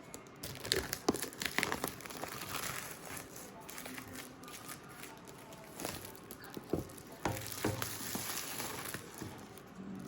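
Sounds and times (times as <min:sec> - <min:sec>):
crackling rustling handling noise: 0:00.1 - 0:10.0.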